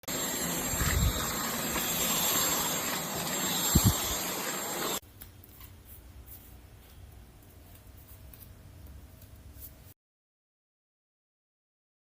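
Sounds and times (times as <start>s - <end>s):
cordless vacuum whirring: 0.0s - 5.0s.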